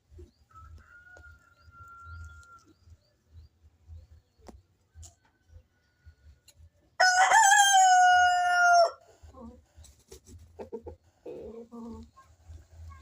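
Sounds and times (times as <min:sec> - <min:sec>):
rooster crowing: 0:07.0 - 0:09.0.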